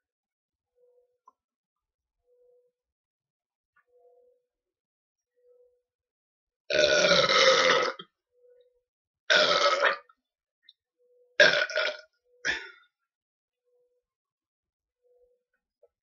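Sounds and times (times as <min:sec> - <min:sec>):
person belching loudly: 0:06.7 - 0:08.0, 0:09.3 - 0:10.0, 0:11.4 - 0:12.0.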